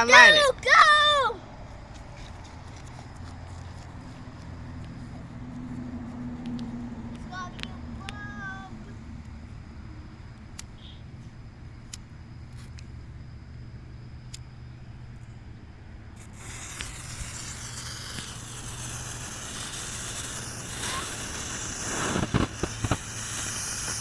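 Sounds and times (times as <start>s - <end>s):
smoke bomb firework hissing: 0.0s - 1.4s, 6.6s - 9.1s, 16.2s - 24.0s
sharp cracks: 16.2s - 24.0s.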